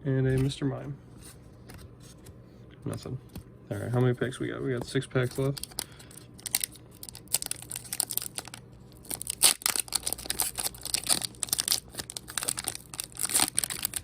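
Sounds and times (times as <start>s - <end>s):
foil wrapper crinkling: 5.3s - 14.0s.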